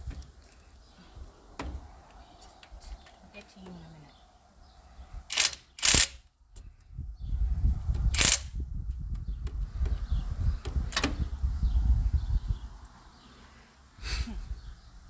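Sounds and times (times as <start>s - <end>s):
low rumble of handling noise: 0.0s - 13.0s
sharp metallic clanks: 5.3s - 6.2s.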